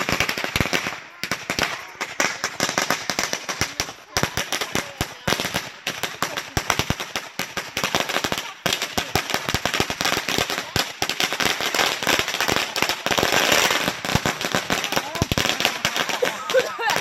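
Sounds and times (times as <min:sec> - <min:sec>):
firecrackers cracking: 0:00.0 - 0:17.0.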